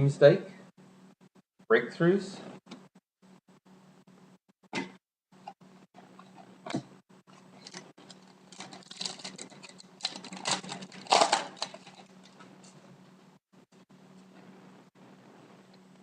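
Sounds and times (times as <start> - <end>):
cards scraping and rustling: 7.3 - 12.8.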